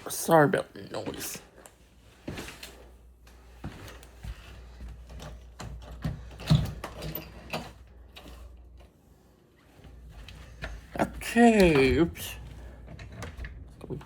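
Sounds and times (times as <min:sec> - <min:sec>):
handling clicks knocks and rattles: 0:05.0 - 0:08.9.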